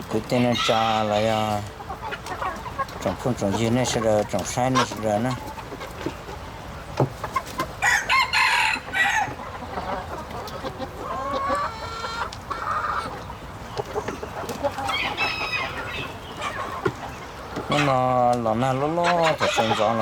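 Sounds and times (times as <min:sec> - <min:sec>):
hens clucking: 0:00.0 - 0:20.0
rooster crowing: 0:07.8 - 0:09.4.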